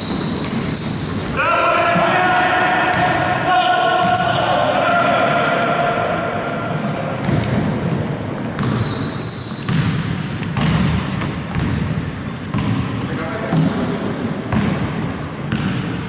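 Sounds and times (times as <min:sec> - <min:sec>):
sneakers squeaking: 0:00.0 - 0:01.4, 0:02.9 - 0:04.4, 0:06.4 - 0:16.0
basketball bouncing on court: 0:02.8 - 0:03.4, 0:04.0 - 0:04.4, 0:06.7 - 0:16.0.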